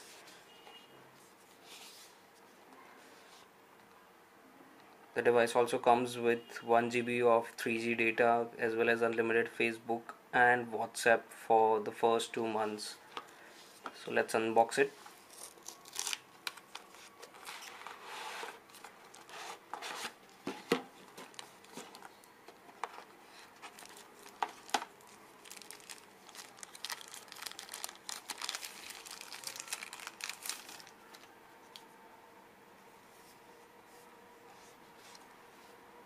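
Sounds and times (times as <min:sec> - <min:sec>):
packaging rustling: 0:15.3 - 0:31.3.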